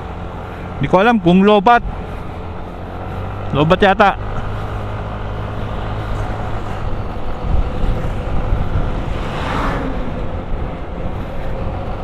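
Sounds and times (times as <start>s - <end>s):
motor scooter engine running: 0.0s - 12.0s
wind noise on microphone: 5.9s - 12.0s.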